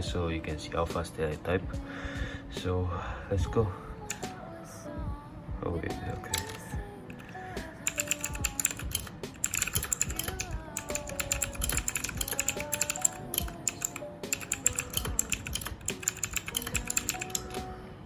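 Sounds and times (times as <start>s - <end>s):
background music with melody: 0.0s - 18.0s
keyboard typing clicks: 4.1s - 4.4s, 6.2s - 17.7s.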